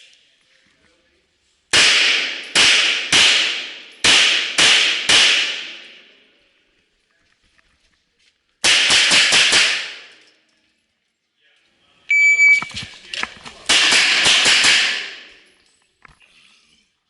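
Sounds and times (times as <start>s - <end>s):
pistol shots with echo: 1.7s - 6.2s, 8.6s - 10.1s, 13.7s - 15.4s.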